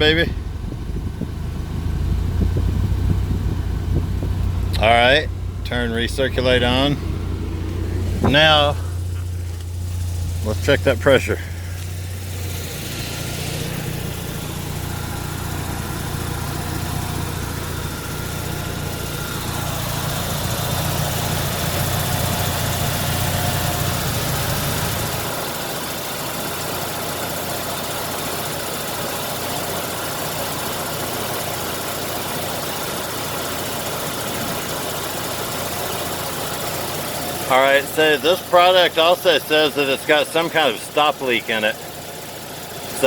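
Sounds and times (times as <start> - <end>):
strong low hum: 0.0 - 21.3
rotary engine idling: 0.0 - 43.0
steady rushing noise: 6.1 - 10.6.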